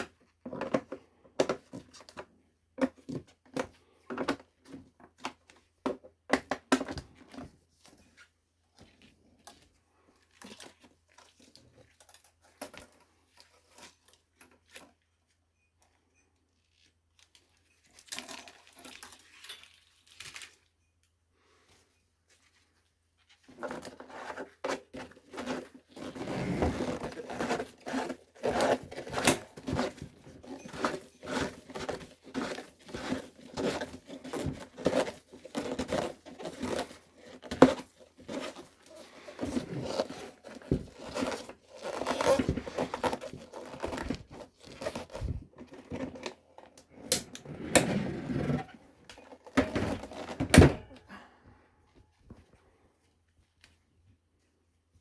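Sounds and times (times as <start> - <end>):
rustling crinkling and tearing: 22.3 - 46.8.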